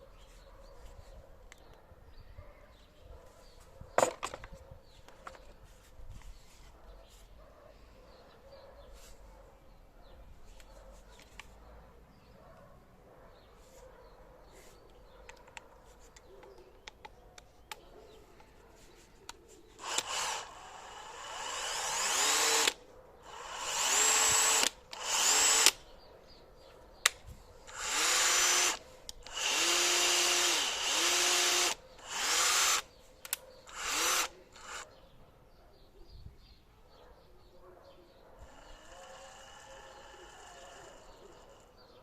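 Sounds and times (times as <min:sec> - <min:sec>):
cordless drill whining: 0:19.8 - 0:25.8, 0:27.7 - 0:32.9, 0:33.7 - 0:34.8, 0:38.4 - 0:41.6.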